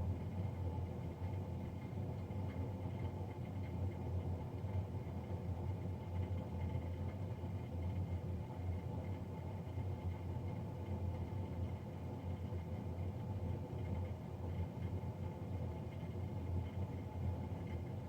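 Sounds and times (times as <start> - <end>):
boiler fan humming: 0.0 - 18.0.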